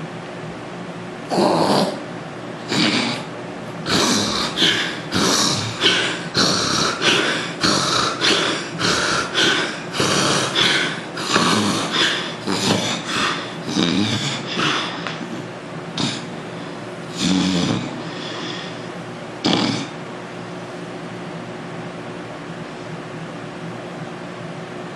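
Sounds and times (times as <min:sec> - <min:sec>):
man snoring: 0:01.3 - 0:02.0, 0:02.6 - 0:16.4, 0:17.1 - 0:18.8, 0:19.4 - 0:20.0.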